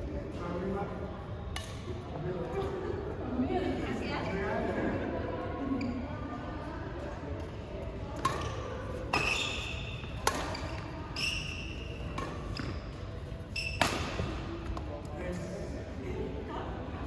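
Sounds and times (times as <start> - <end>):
rackets hitting shuttlecock: 1.5 - 1.9, 8.2 - 13.0, 13.6 - 14.9
short high shoe squeaks: 9.1 - 12.9, 13.5 - 14.2.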